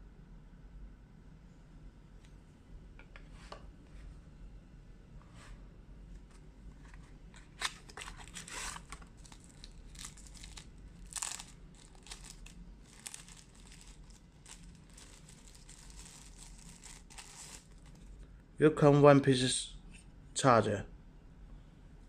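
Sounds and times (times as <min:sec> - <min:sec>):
packaging crinkling and rustling: 0:06.8 - 0:18.1.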